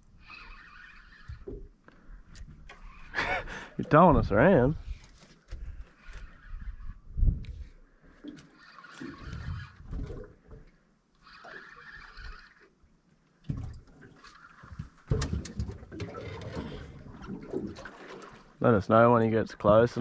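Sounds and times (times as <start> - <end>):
fishing reel buzzing: 0.0 - 2.0, 2.6 - 3.5, 5.8 - 7.7, 8.4 - 9.9, 11.2 - 12.8.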